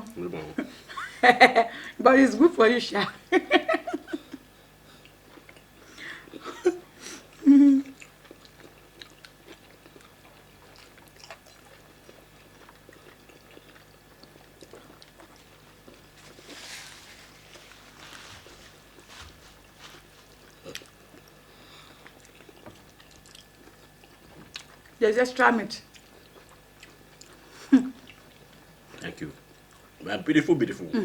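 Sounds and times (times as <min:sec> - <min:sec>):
chewing: 0:04.8 - 0:06.2, 0:07.2 - 0:25.0, 0:25.8 - 0:30.0.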